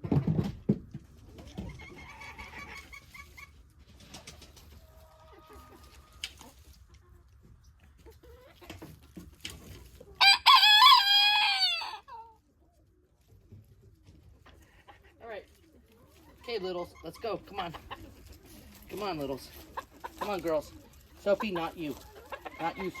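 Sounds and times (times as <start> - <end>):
hens clucking faintly: 0.0 - 23.0
rooster crowing: 10.2 - 12.1.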